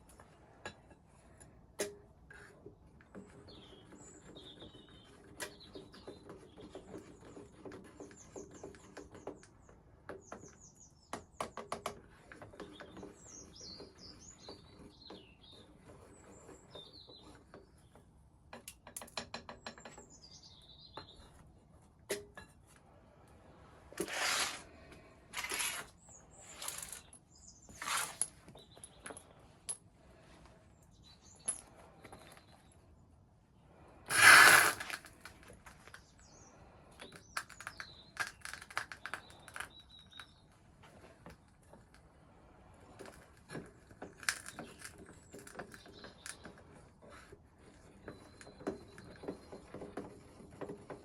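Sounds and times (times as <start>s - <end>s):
short noisy strokes: 34.1s - 35.0s.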